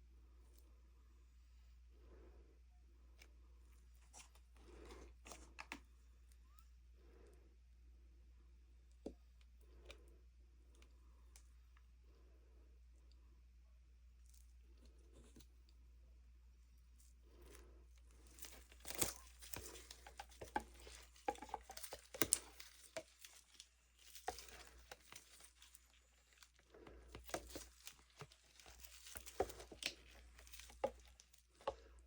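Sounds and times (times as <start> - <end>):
plastic cups handled with taps: 18.5 - 25.8.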